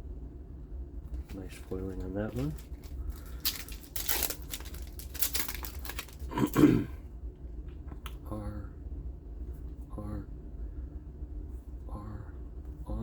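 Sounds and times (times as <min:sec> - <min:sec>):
loud handling noise: 0:01.1 - 0:06.8
foil wrapper tearing and crinkling: 0:01.3 - 0:06.6.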